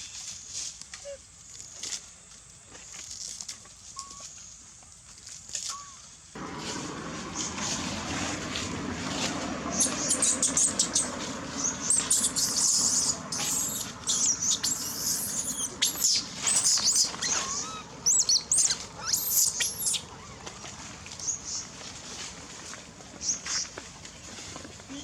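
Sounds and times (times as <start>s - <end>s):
baby monkey squealing: 9.8s - 20.4s.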